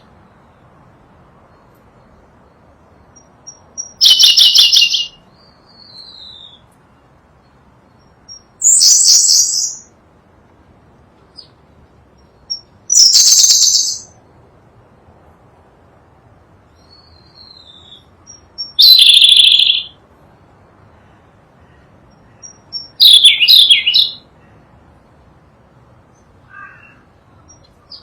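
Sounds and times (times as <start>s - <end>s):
bird singing trilled phrases: 3.1s - 6.7s, 7.9s - 9.9s, 12.4s - 14.2s, 16.8s - 20.0s, 22.1s - 24.3s.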